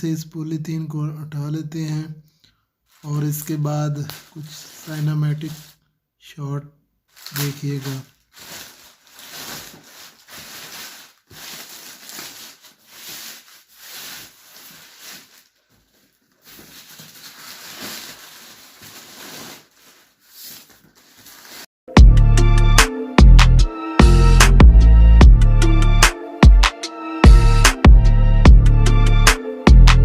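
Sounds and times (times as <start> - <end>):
plastic wrapping rustling: 2.9 - 5.9, 7.1 - 21.7
music with heavy bass: 21.9 - 30.0.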